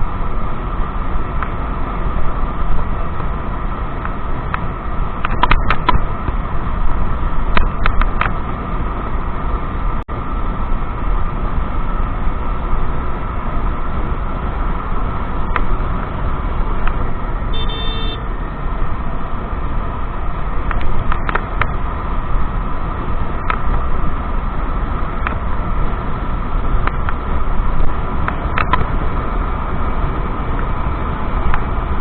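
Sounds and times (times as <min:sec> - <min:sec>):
scooter running: 0:12.7 - 0:32.0
vehicle horn honk: 0:17.5 - 0:18.3.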